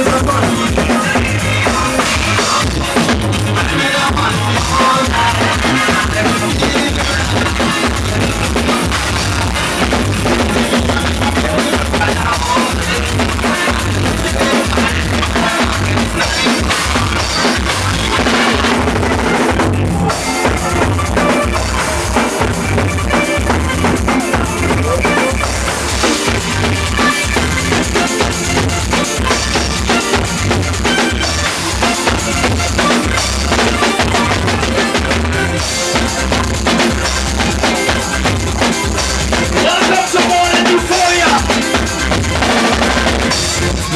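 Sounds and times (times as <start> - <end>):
drum kit beat: 0.0 - 43.9
loud soca music: 0.0 - 43.9
pulsing bass line: 0.0 - 43.9.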